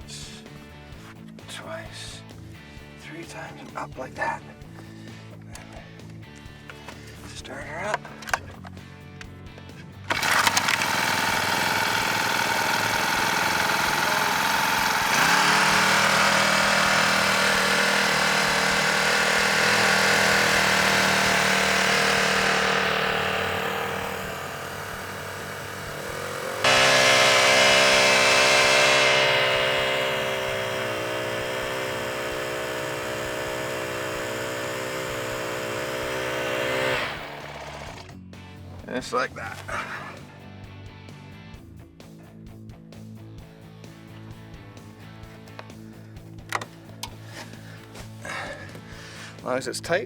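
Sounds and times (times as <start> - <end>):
small winch engine running: 10.1 - 38.1.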